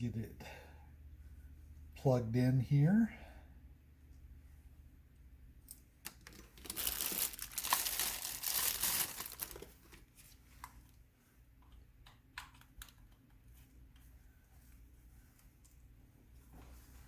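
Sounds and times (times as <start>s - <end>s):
crinkling and rustling: 5.6s - 17.0s.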